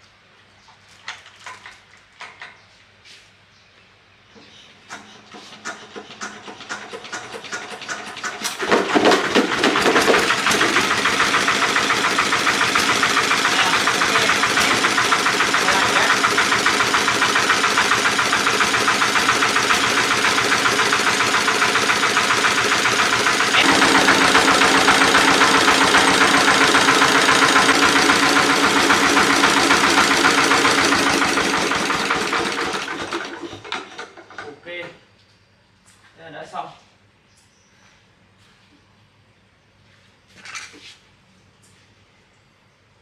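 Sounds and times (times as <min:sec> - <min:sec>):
generator engine running: 0:08.8 - 0:34.0.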